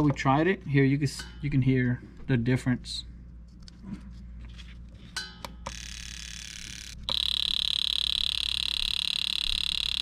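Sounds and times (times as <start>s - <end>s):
fuel injector buzzing: 5.7s - 10.0s.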